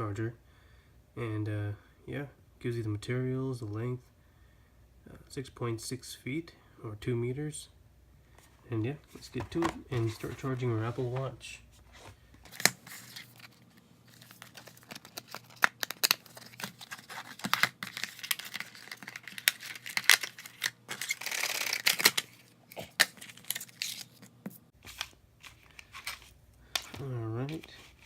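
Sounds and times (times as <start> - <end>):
packaging tearing: 12.5 - 24.3
packaging crinkling: 12.5 - 27.0.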